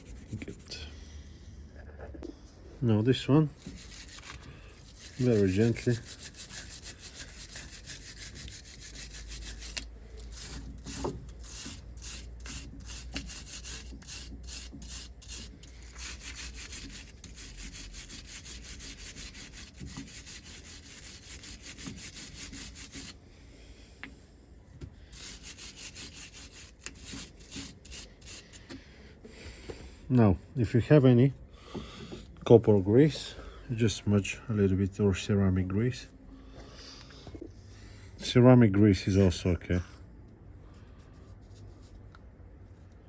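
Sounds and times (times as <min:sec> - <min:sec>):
abrasive pad scrubbing metal: 0:00.0 - 0:00.8, 0:03.6 - 0:23.2, 0:25.1 - 0:28.8.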